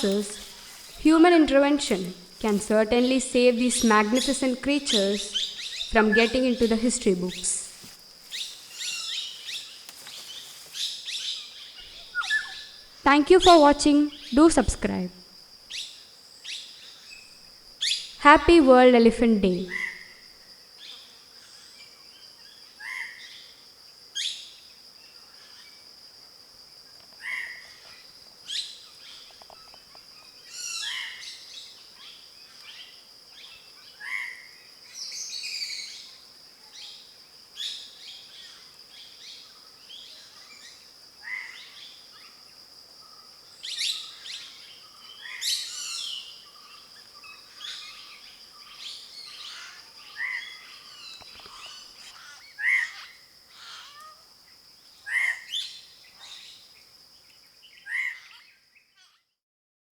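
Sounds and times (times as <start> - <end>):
wild birds chirping: 0.0 - 20.2, 27.2 - 36.2, 43.0 - 59.2.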